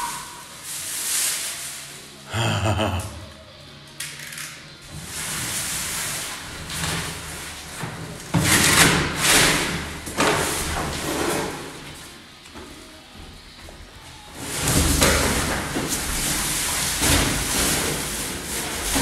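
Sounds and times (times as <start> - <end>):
packaging rustling and scraping: 0.0 - 2.2, 4.9 - 12.8, 14.3 - 19.0.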